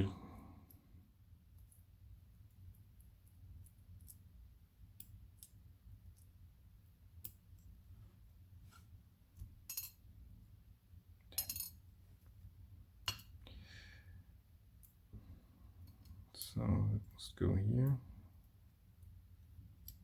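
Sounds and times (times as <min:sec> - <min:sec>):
metal lock pins clinking: 0:11.3 - 0:11.8.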